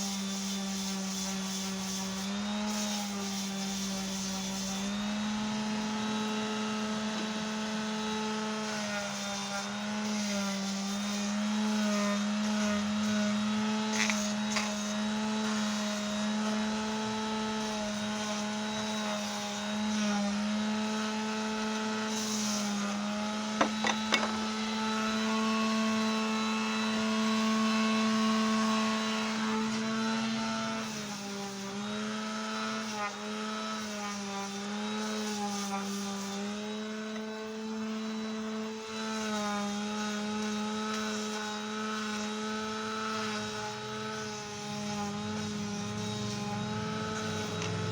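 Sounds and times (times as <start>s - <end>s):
power sander humming: 0.0s - 47.9s
quick knocks: 23.6s - 24.5s.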